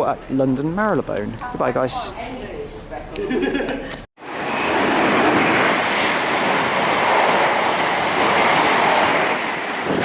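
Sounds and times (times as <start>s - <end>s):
passing train rushing: 4.2s - 10.0s.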